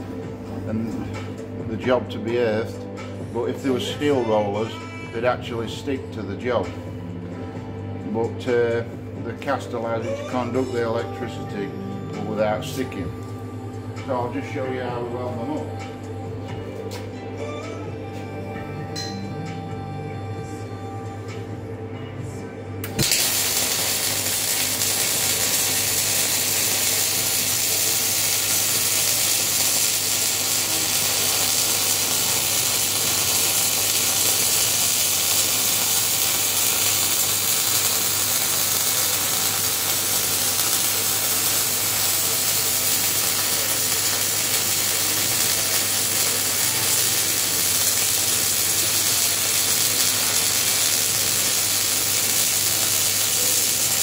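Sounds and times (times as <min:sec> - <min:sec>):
arc welding crackling hiss: 0:22.8 - 0:54.0.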